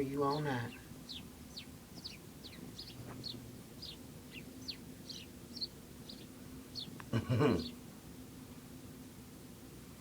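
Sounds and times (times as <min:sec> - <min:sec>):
small birds chirping: 0:00.0 - 0:07.9
faint low hum: 0:00.0 - 0:10.0.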